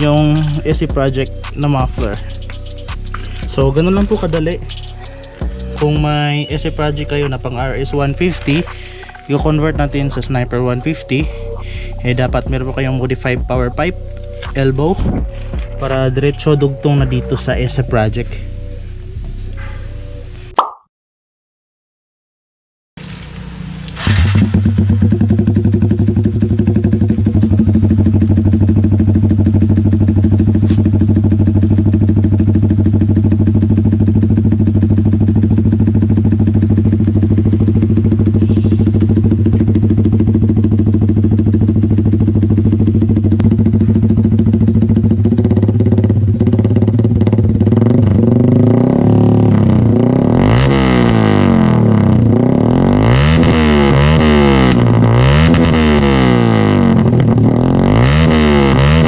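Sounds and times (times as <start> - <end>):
motorcycle engine idling: 0.0 - 19.3, 23.0 - 53.4
motorcycle engine revving: 0.0 - 20.2, 23.0 - 59.0.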